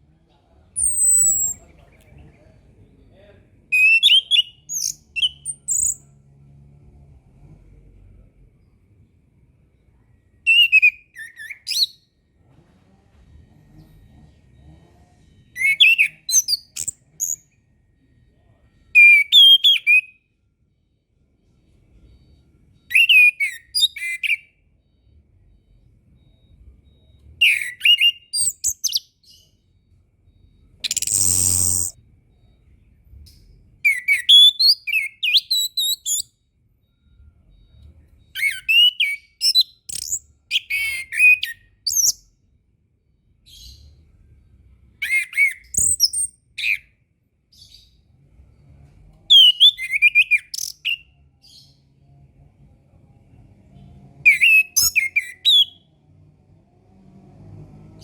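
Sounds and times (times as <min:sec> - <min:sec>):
thrush singing whistles: 0:00.8 - 0:01.7, 0:03.7 - 0:06.0, 0:10.5 - 0:12.1, 0:15.5 - 0:17.6, 0:19.0 - 0:20.3, 0:22.8 - 0:25.2, 0:26.1 - 0:32.8, 0:33.4 - 0:36.3, 0:36.9 - 0:42.3, 0:45.0 - 0:47.0, 0:49.3 - 0:51.1, 0:54.2 - 0:55.9.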